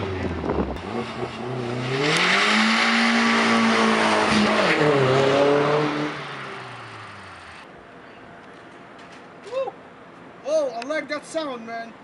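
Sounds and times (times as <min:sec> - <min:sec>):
car engine revving: 0:00.0 - 0:07.6.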